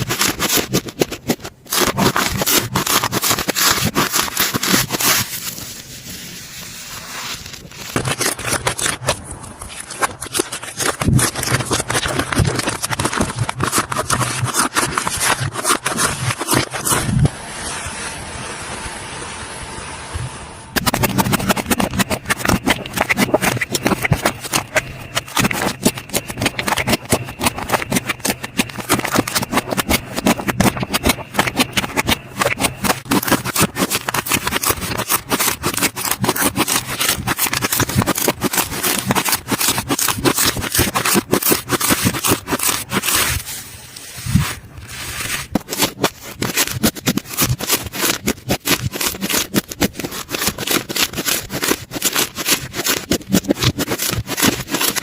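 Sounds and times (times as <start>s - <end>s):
slime crackling and popping: 20.8s - 43.3s.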